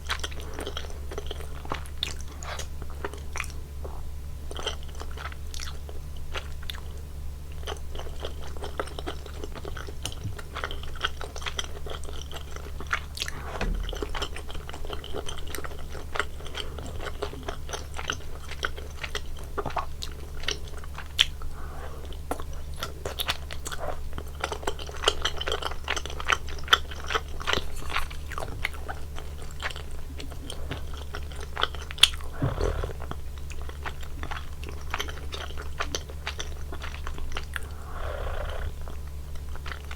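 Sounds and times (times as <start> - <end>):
person chewing food: 0.0 - 39.9
steady low hum: 10.6 - 24.6, 27.0 - 39.9.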